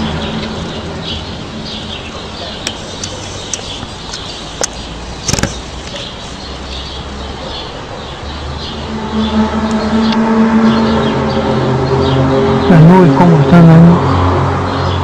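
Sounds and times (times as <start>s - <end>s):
small birds chirping: 0.0s - 15.0s
sharp clicks: 2.6s - 6.1s.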